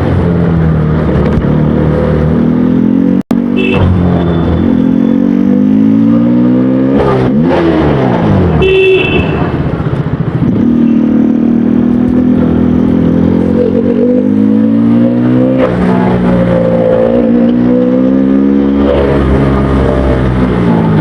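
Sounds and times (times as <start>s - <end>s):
motorcycle engine: 0.0s - 21.0s
horn toot: 8.6s - 9.6s.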